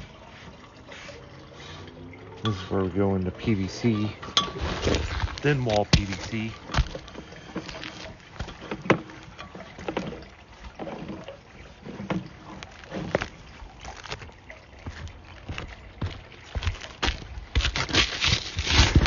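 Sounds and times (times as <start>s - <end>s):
cable knocks and rattles: 4.2s - 19.0s.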